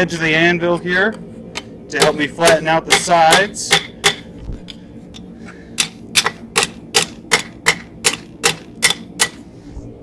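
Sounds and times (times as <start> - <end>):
hammer striking iron on anvil: 1.6 - 4.3, 5.8 - 9.5.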